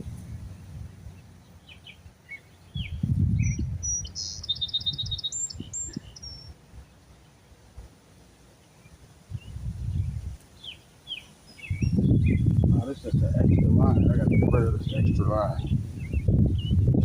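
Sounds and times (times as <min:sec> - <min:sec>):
low microphone rumble: 0:00.0 - 0:07.0, 0:09.3 - 0:10.4, 0:11.6 - 0:17.0
small birds chirping: 0:00.0 - 0:17.0.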